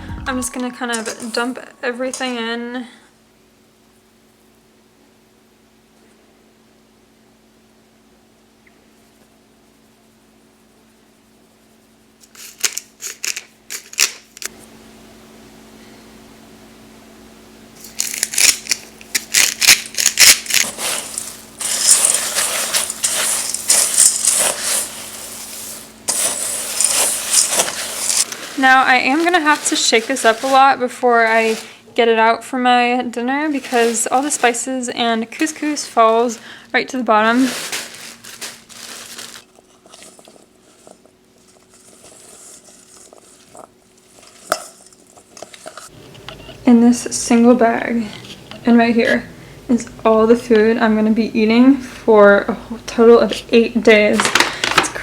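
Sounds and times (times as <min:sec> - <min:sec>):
plastic bags rustling: 0:17.8 - 0:31.9, 0:33.2 - 0:45.9
dried beans rattling as poured: 0:17.9 - 0:31.8, 0:33.5 - 0:34.7, 0:37.2 - 0:45.8.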